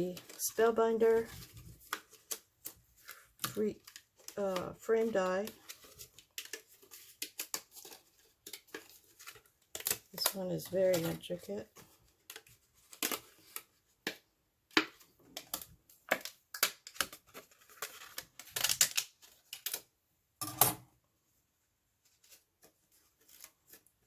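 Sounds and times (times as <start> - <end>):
stiff paper rustling and tapping: 0.0 - 19.8.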